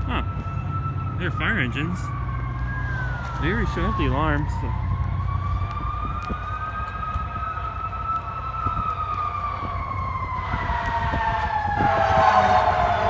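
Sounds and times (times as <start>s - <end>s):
diesel engine running: 0.0s - 13.0s
fire engine siren wailing: 0.0s - 13.0s
second siren tone: 0.0s - 13.0s.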